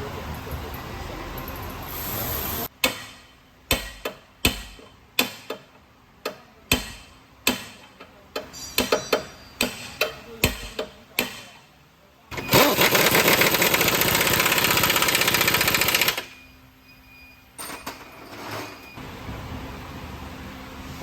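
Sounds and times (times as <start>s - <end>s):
steady hiss: 1.8s - 2.7s
tools knocking on metal: 3.7s - 11.5s.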